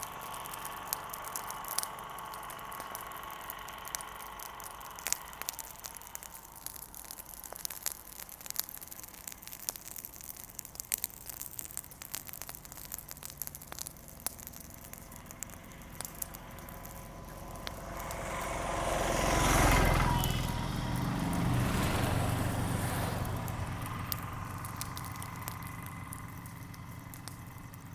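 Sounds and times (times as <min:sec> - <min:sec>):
passing vehicle: 0:00.0 - 0:08.6, 0:11.4 - 0:27.9
small fire crackling and popping: 0:00.0 - 0:27.9.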